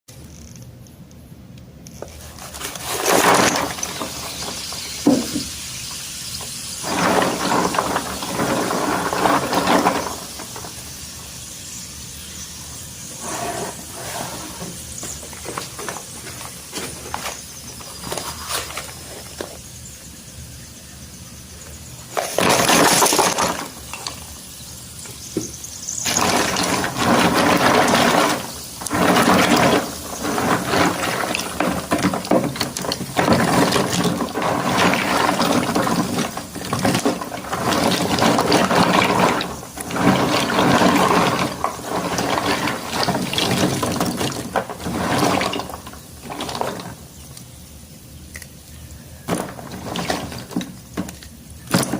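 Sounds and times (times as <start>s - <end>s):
hands stirring water: 2.1s - 5.5s, 6.4s - 10.9s, 25.1s - 47.5s, 49.3s - 51.9s.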